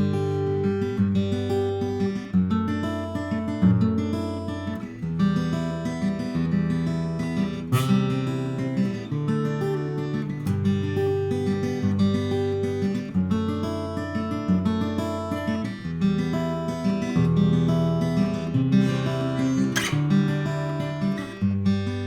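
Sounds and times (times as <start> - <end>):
acoustic guitar fingerpicking: 0.0 - 22.0
guitar strum: 18.0 - 22.0.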